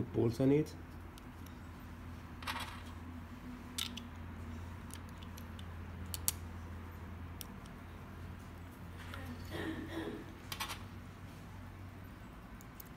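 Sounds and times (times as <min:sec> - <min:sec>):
steady low hum: 0:00.0 - 0:12.9.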